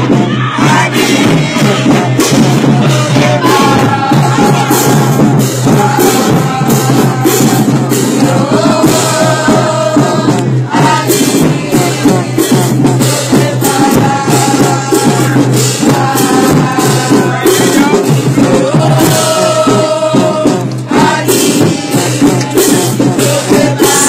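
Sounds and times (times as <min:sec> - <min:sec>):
drum beat: 0:00.0 - 0:24.0
shaken percussion: 0:00.0 - 0:24.0
voices singing: 0:00.0 - 0:24.0.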